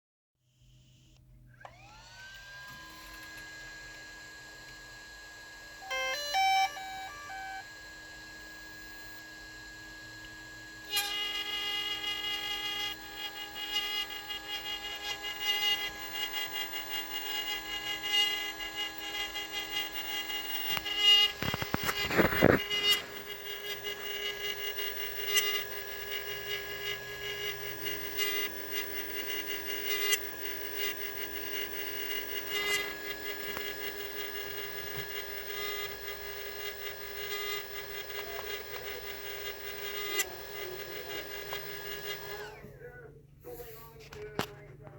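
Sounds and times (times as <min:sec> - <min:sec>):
camera gimbal motors whining: 0:00.7 - 0:42.8
scattered clicks: 0:18.1 - 0:42.5.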